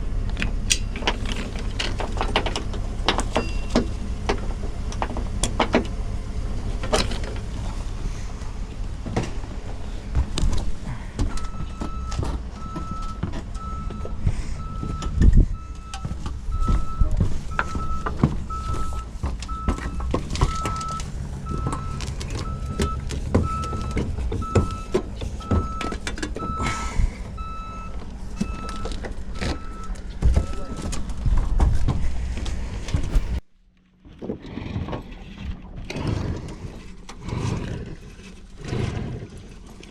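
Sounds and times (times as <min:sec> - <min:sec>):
vehicle engine running: 0:00.0 - 0:33.9
knocks and clunks: 0:00.3 - 0:36.2
reversing warning beep: 0:11.3 - 0:31.1.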